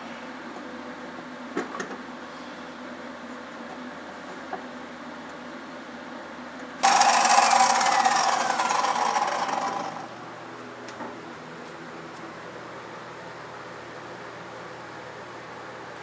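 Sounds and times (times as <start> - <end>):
power saw running: 6.8 - 10.3.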